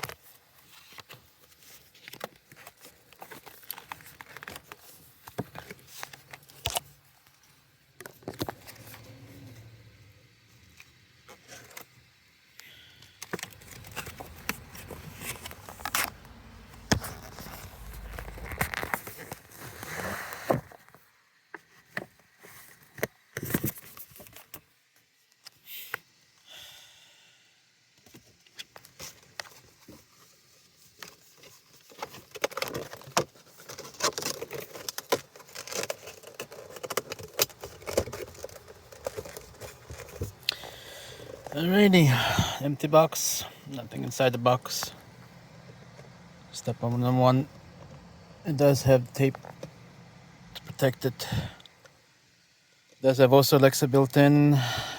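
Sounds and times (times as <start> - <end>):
cardboard packaging rustling: 0.0 - 9.6, 13.2 - 24.6, 28.4 - 42.4
package being unboxed: 13.1 - 20.8.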